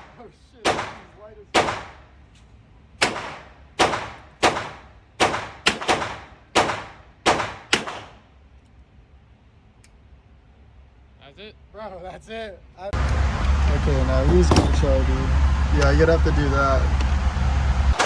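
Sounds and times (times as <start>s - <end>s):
handgun gunshots with echo: 0.0s - 2.0s, 3.0s - 8.2s.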